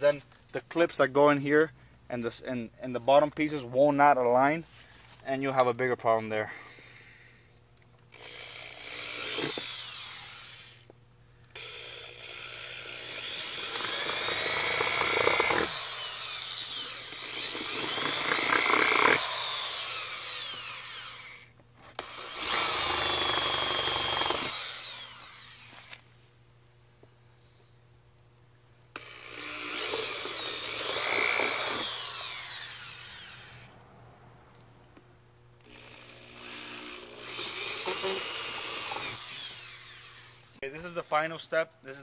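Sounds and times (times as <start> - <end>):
power drill boring plastic: 8.1 - 10.9, 11.5 - 26.0, 29.0 - 33.8, 35.6 - 40.6.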